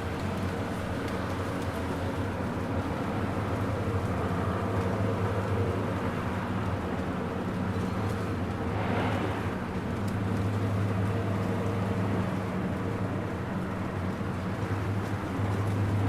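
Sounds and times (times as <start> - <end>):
rainfall: 0.0 - 16.0
low rumble: 8.5 - 10.6.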